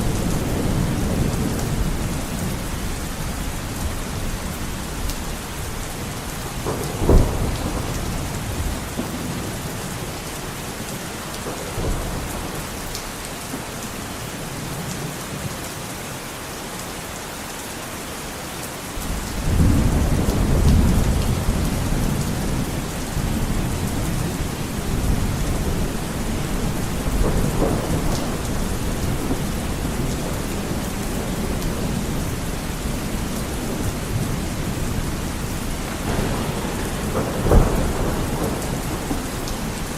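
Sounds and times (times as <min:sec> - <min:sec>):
rolling thunder rumble: 0:00.0 - 0:12.8, 0:19.0 - 0:39.9
heavy rain on window: 0:00.0 - 0:39.9
wind: 0:00.0 - 0:39.9
thunder clap: 0:06.4 - 0:10.1, 0:19.0 - 0:39.9.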